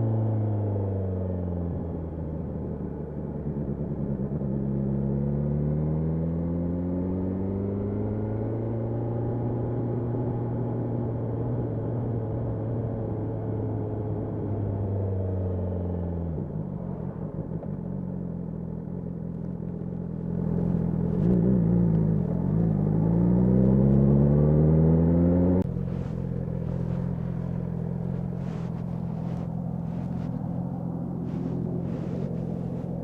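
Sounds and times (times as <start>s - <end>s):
motorcycle engine accelerating: 17.8s - 33.0s.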